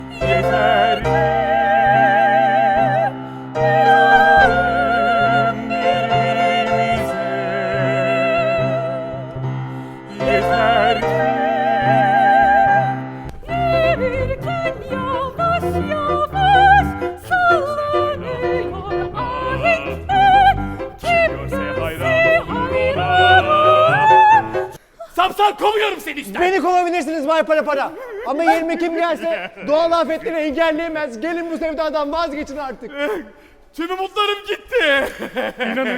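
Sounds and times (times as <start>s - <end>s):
musical accompaniment: 0.0s - 24.8s
operatic singing: 0.0s - 24.8s.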